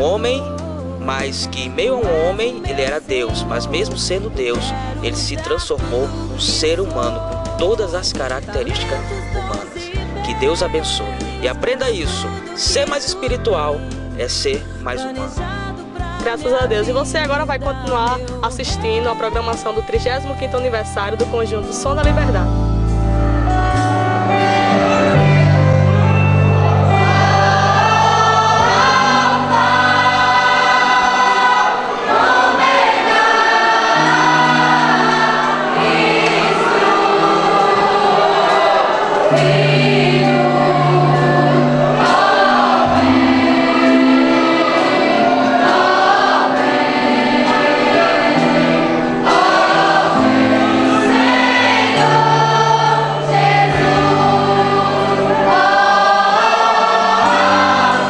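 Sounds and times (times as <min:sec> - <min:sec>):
sustained bass line: 0:00.0 - 0:31.0
instrumental accompaniment: 0:00.0 - 0:58.0
youth choir singing a hymn: 0:01.2 - 0:17.1, 0:23.4 - 0:58.0.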